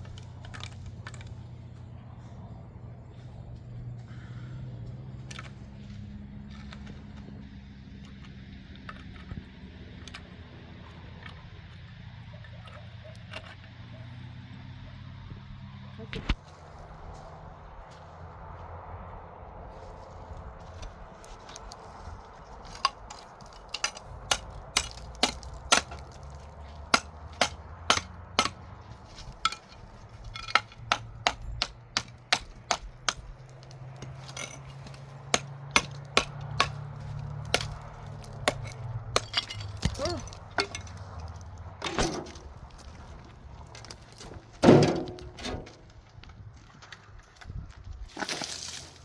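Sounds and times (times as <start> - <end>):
metal tool striking stone: 22.8 - 28.6, 29.2 - 33.3, 34.0 - 41.0.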